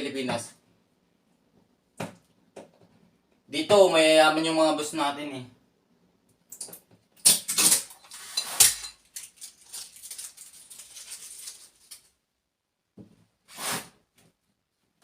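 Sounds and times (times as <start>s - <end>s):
packaging rustling and scraping: 7.6s - 12.1s.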